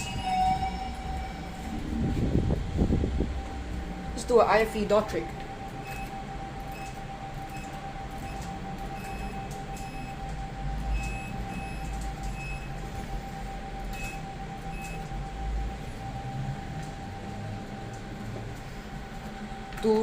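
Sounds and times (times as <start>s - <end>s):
low rumble: 0.0s - 6.7s
lift hum with held tone: 0.0s - 20.0s.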